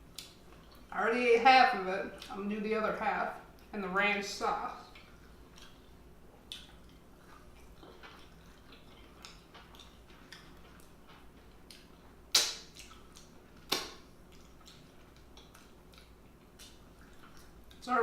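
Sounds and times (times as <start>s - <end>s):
person chewing with wet mouth clicks: 0.1s - 0.9s, 4.9s - 17.8s.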